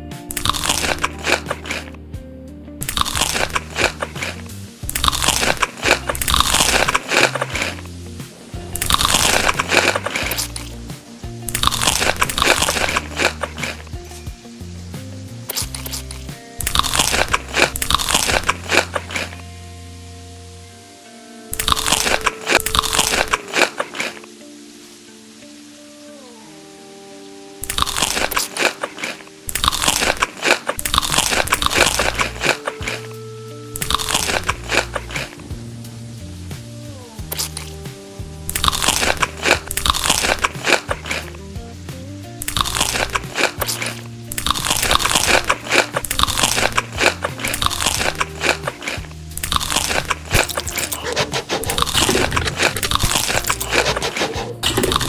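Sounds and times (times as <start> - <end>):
person chewing crunchy food: 0.0 - 2.0, 2.8 - 8.0, 8.7 - 10.8, 11.5 - 14.0, 15.5 - 19.4, 21.6 - 24.3, 27.6 - 33.1, 33.8 - 35.4, 37.4 - 37.7, 38.5 - 41.4, 42.4 - 55.0
soft music: 0.0 - 55.0.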